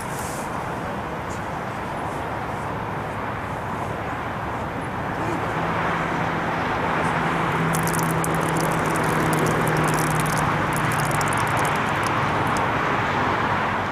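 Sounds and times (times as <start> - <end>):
fast faint ticking: 7.7 - 12.6.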